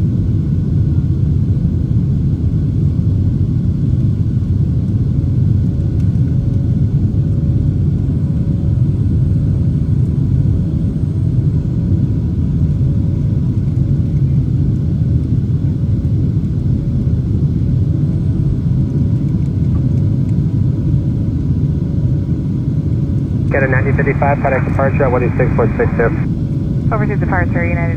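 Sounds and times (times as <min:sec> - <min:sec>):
airplane cabin engine rumble: 0:23.5 - 0:26.3, 0:26.9 - 0:27.9.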